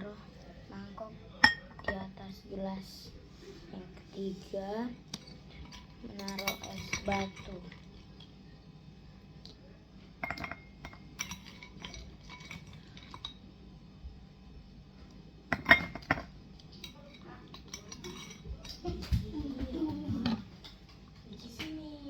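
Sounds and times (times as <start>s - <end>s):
ice cubes clinking on glass: 10.2s - 13.4s.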